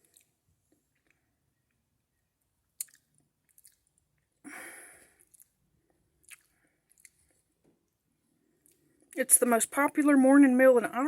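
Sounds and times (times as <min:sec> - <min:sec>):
person chewing cereal: 0:02.8 - 0:04.3, 0:05.0 - 0:07.6.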